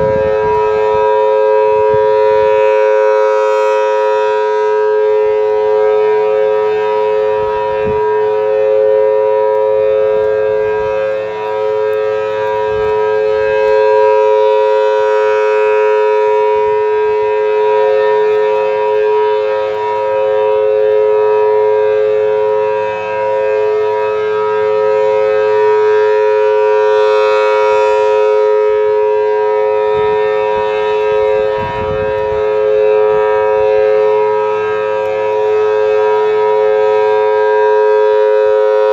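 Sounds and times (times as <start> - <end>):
siren steady tone: 0.0 - 38.9.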